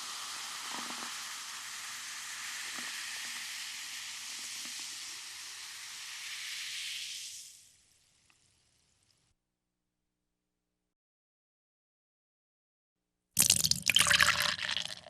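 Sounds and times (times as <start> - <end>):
food sizzling in a pan: 0.0 - 9.1.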